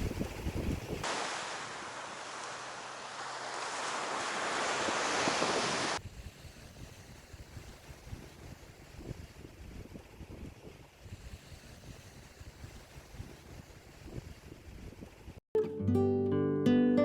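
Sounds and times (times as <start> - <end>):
wind rumbling on microphone: 0.0 - 1.1, 3.4 - 15.4
sea waves washing in: 0.0 - 14.5.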